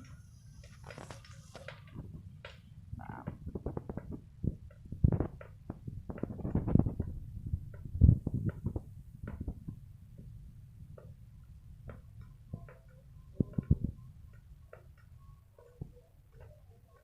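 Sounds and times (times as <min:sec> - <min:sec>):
microphone handling rustling and clicks: 0:03.0 - 0:09.6.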